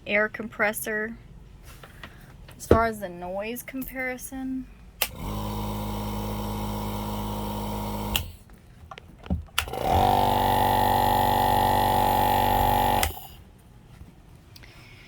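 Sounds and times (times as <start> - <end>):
compressor motor humming: 5.0 - 8.4, 9.6 - 13.4.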